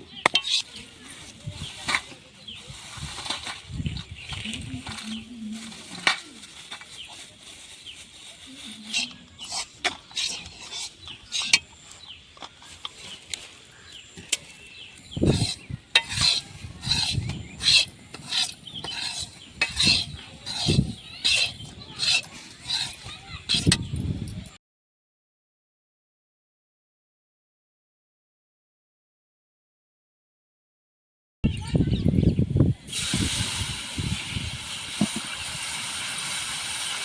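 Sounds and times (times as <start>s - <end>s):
utensil scraping a pan: 0.1s - 24.6s.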